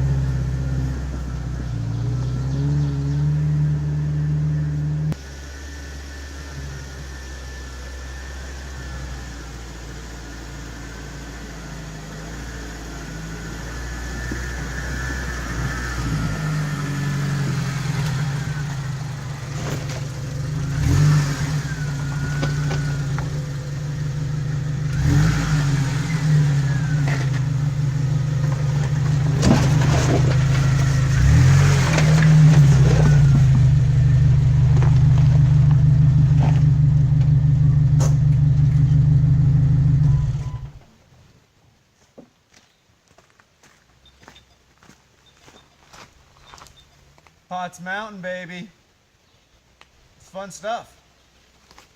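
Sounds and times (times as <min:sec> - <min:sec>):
off-road vehicle engine revving: 0:00.0 - 0:40.9.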